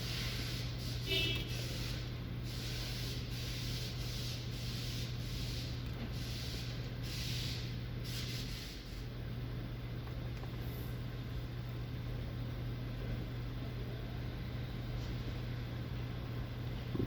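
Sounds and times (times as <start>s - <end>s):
hiss: 0.0s - 9.0s
engine idling with misfire: 0.0s - 9.1s.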